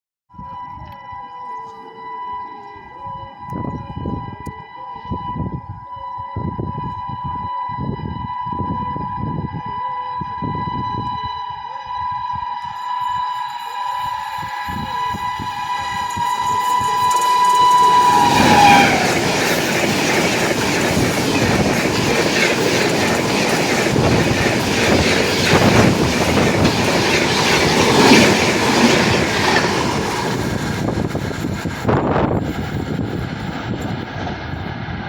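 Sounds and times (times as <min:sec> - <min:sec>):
locomotive horn: 0:00.4 - 0:21.6
train wheels clattering over rail joints: 0:16.6 - 0:33.8.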